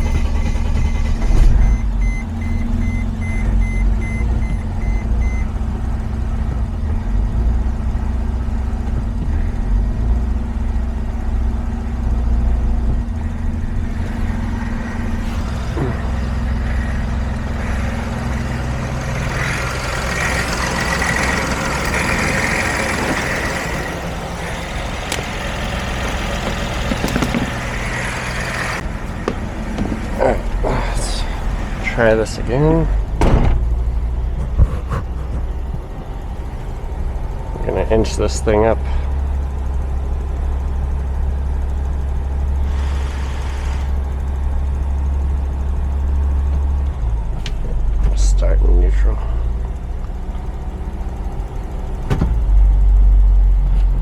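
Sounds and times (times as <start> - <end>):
electronic beeping: 0.0 - 5.5
diesel engine running: 0.0 - 54.0.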